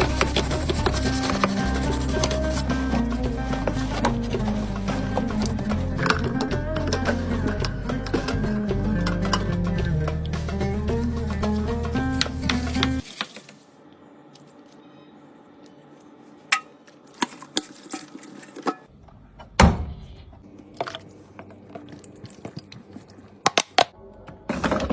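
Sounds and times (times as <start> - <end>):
background music: 0.0 - 13.0.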